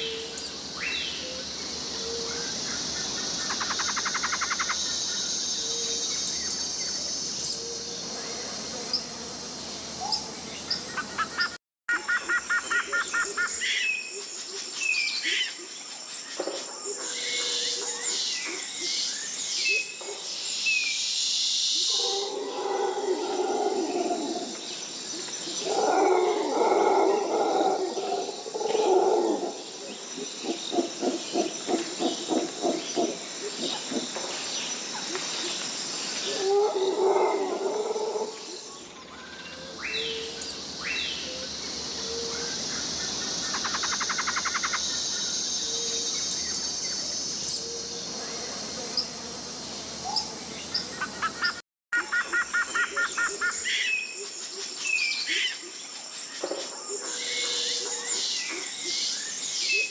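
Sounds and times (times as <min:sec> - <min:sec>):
insects buzzing: 0:00.0 - 0:11.6, 0:20.3 - 0:51.6
fast trilling call: 0:43.5 - 0:44.9.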